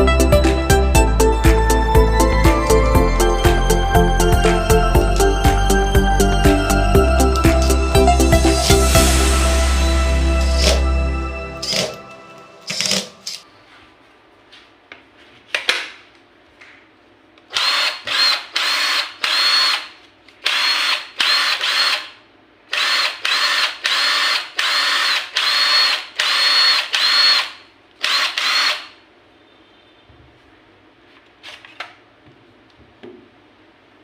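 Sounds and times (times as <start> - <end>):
impact wrench bursts: 17.5 - 29.0.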